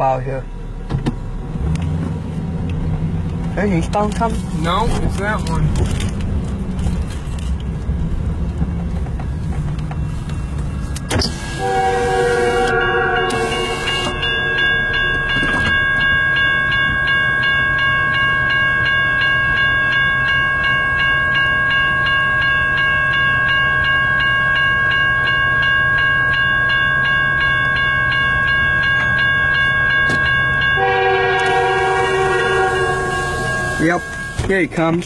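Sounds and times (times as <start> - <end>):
railroad crossing bell ringing: 10.4 - 35.0
locomotive horn blowing: 11.3 - 15.0, 30.8 - 34.4.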